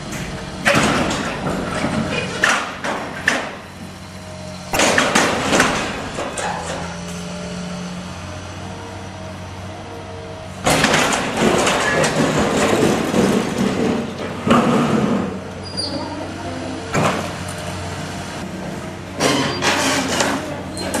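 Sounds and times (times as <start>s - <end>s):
machine engine humming: 0.0s - 14.5s
rubble crashing and grinding: 4.7s - 6.8s, 10.6s - 15.4s.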